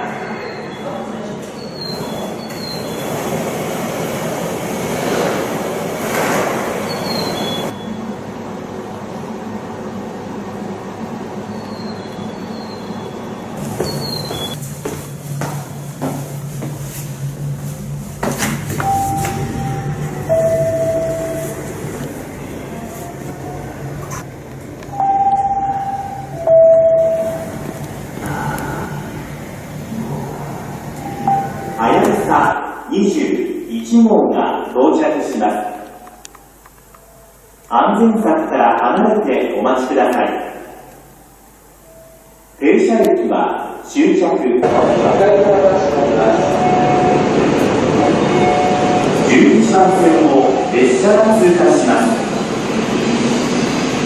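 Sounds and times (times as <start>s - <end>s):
train rumbling on rails: 0.0s - 35.3s, 35.9s - 54.0s
high wheel squeals: 6.9s - 8.0s, 11.5s - 14.6s
low hum: 13.7s - 31.9s.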